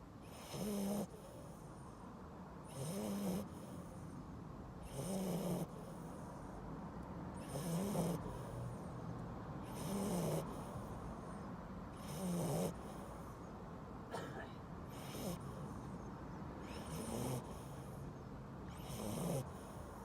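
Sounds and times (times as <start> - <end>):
dog snoring: 0.2 - 1.9, 2.6 - 4.0, 4.8 - 6.5, 7.4 - 9.0, 9.6 - 13.4, 14.9 - 16.0, 16.6 - 20.0.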